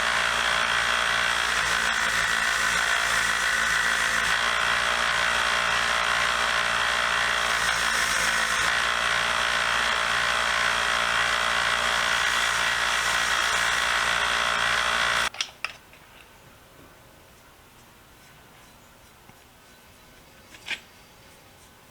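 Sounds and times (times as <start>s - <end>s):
belt sander grinding metal: 0.0s - 15.3s.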